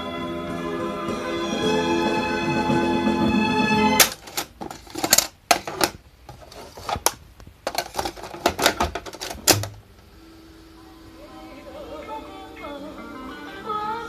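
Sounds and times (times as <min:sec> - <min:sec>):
sharp clicks and clattering knocks: 0:04.0 - 0:09.8.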